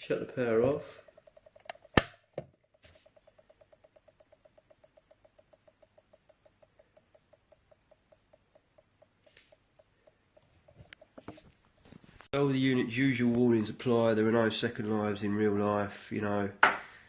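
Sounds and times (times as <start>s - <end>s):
power supply ticking: 0.0s - 11.9s.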